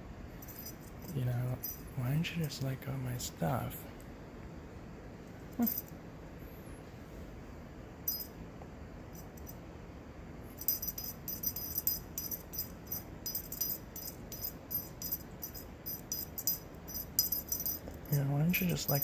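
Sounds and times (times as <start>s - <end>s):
small bell jingling: 0.4s - 2.0s, 5.6s - 5.9s, 8.1s - 8.4s, 10.5s - 19.0s.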